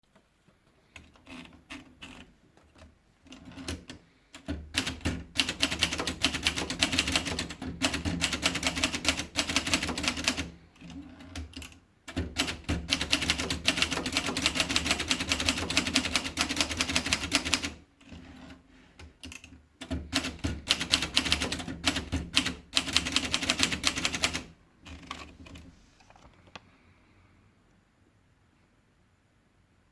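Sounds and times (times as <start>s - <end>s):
typewriter keys striking: 3.4s - 10.5s, 11.3s - 17.8s, 19.2s - 25.6s.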